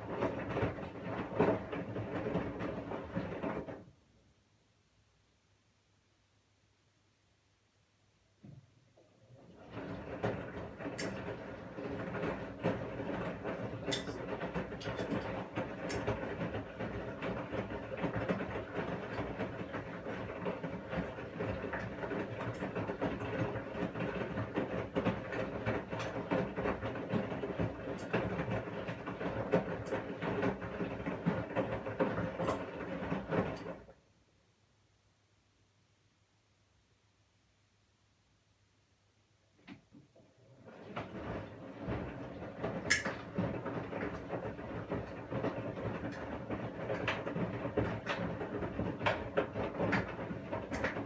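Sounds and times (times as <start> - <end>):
tumbling laundry rattling: 0.0 - 3.8, 9.6 - 33.8, 40.6 - 51.0
washing machine motor hum: 0.0 - 4.0, 8.4 - 34.0, 39.5 - 51.0.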